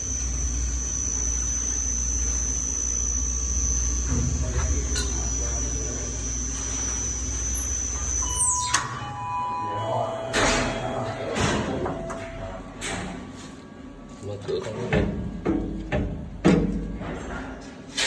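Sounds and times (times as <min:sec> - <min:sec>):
high-pitched whine: 0:00.0 - 0:13.2
machinery humming: 0:00.0 - 0:14.1.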